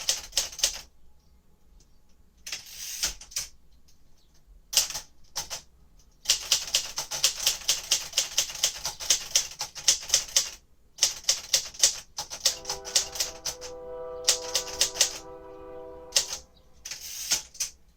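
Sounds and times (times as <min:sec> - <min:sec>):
manual typewriter typing: 0:00.0 - 0:00.9, 0:02.4 - 0:03.5, 0:04.7 - 0:13.3.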